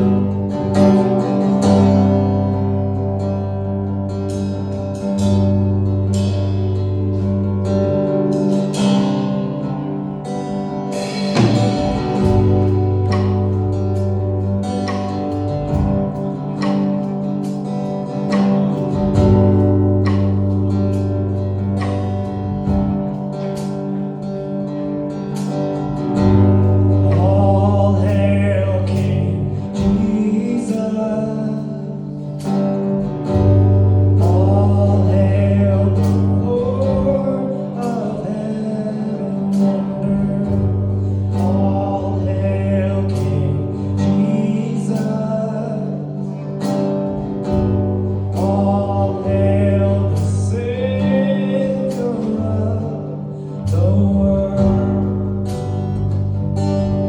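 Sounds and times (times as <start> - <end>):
low bass notes: 0.0 - 57.0
strummed acoustic guitar: 0.0 - 57.0
person singing: 25.4 - 56.0.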